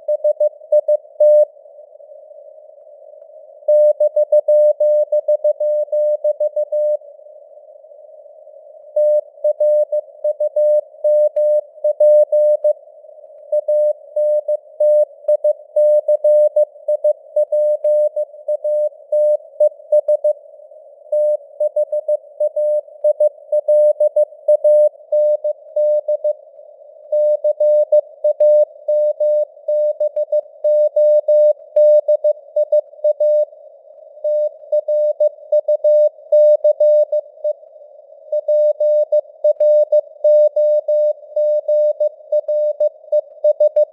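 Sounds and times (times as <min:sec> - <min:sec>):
morse code beeps: 0:34.3 - 0:37.2, 0:38.4 - 0:43.9.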